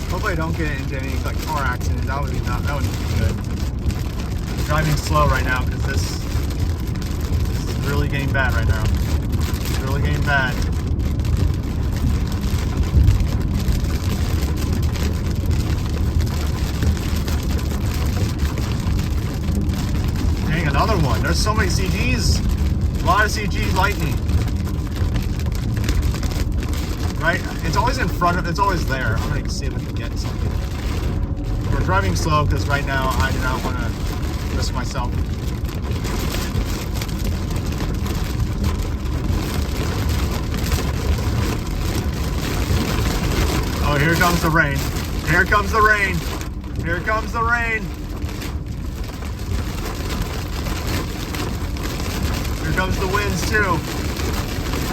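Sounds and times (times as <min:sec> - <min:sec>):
car driving in strong wind: 0:00.0 - 0:54.9.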